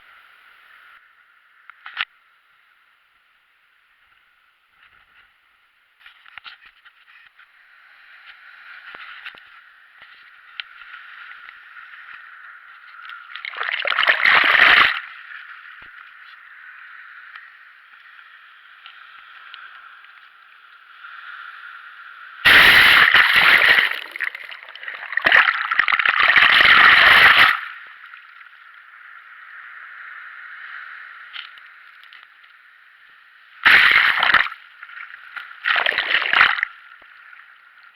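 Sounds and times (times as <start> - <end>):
water splashing: 13.4 - 15.0, 22.5 - 28.4, 33.6 - 37.3
seawater washing at shore: 22.5 - 27.8, 33.6 - 37.3.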